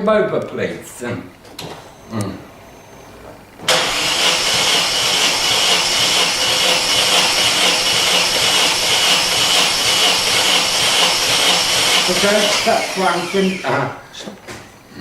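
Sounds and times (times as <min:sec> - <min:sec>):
engine cranking on starter motor: 0:03.6 - 0:13.8.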